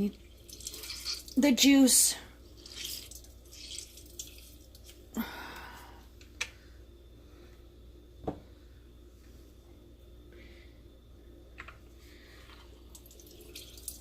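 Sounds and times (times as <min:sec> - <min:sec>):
juice dripping and squirting: 0:00.0 - 0:05.2, 0:11.6 - 0:14.0.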